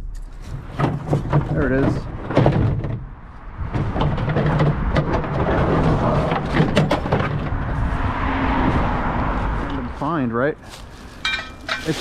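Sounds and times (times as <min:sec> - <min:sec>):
rustling through brush: 0:10.6 - 0:12.0
sharp metal knocks: 0:11.2 - 0:12.0.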